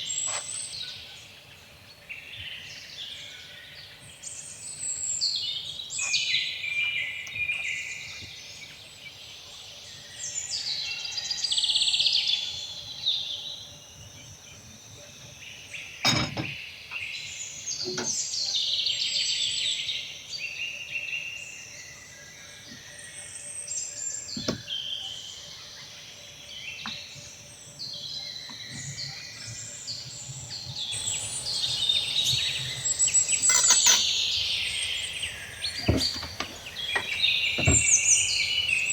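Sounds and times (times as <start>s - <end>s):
birds chirping and singing: 27.9s - 38.9s
sharp knocks: 31.0s - 38.9s.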